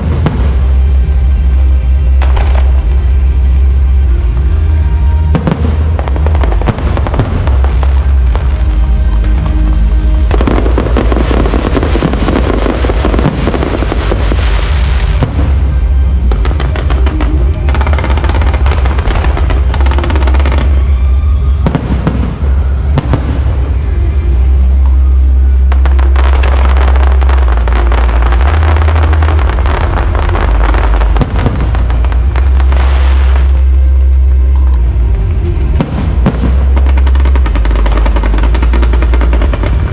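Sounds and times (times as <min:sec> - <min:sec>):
fireworks booming: 0:00.0 - 0:39.9
fireworks crackling: 0:00.0 - 0:39.9.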